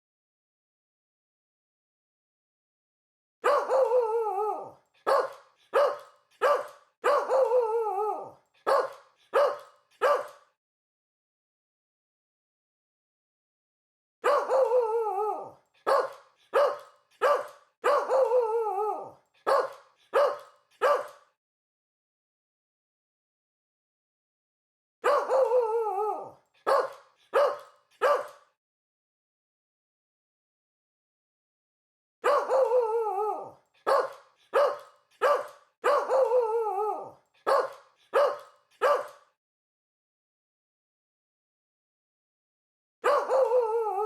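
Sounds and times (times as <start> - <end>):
dog barking: 3.4 - 4.0, 5.0 - 7.6, 8.6 - 10.6, 14.2 - 14.8, 15.8 - 18.4, 19.4 - 21.4, 25.0 - 25.6, 26.6 - 28.6, 32.2 - 39.4, 43.0 - 43.7.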